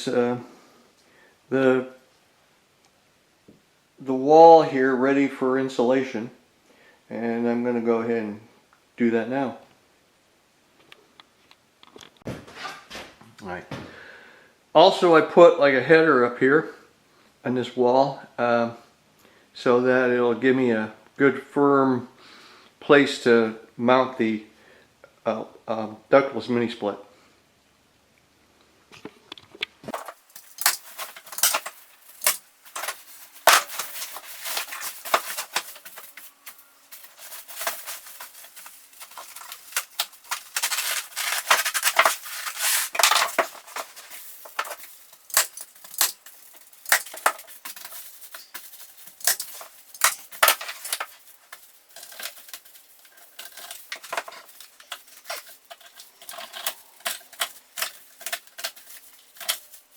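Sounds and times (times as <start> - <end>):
material crinkling by hand: 29.9 - 59.9.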